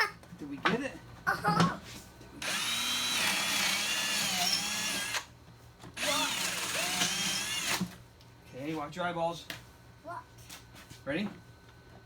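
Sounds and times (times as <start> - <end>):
power drill whine: 2.4 - 5.3, 6.0 - 7.9.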